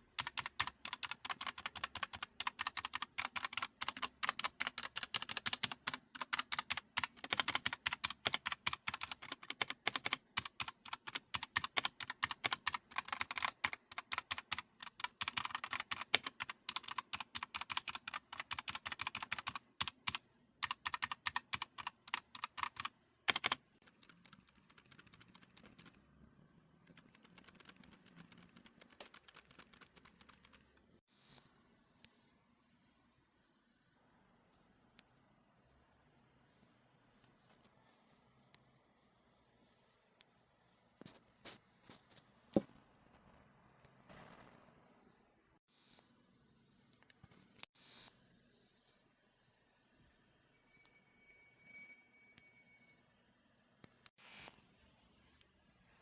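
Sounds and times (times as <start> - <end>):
mechanical keyboard typing: 0.0 - 26.0, 26.8 - 31.0.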